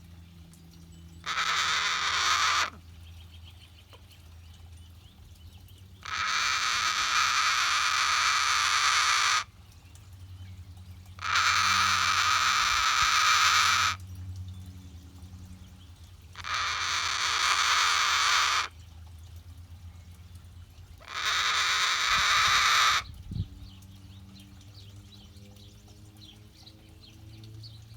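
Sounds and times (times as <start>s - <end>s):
cockatoo raspy hissing: 1.3s - 2.7s, 6.0s - 9.5s, 11.2s - 14.0s, 16.4s - 18.7s, 21.1s - 23.0s.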